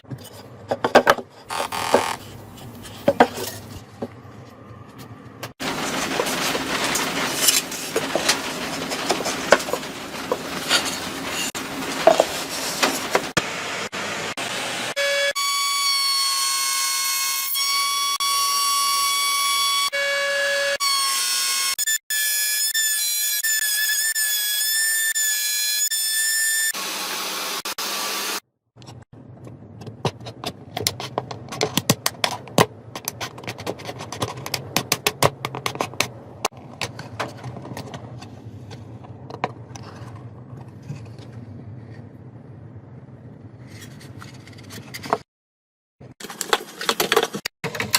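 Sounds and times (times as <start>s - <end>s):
power tool motor whine: 26.4s - 28.4s.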